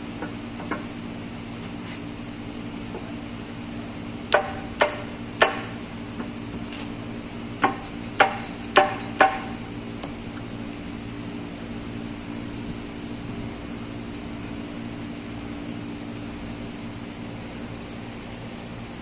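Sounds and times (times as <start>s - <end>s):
steady low hum: 0.0s - 19.0s
hammer striking metal: 4.3s - 5.8s, 7.6s - 9.6s.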